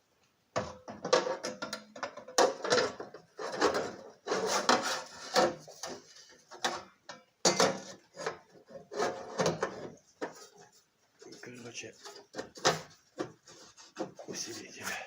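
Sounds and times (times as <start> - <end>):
metal scraping and rubbing: 3.3 - 6.2.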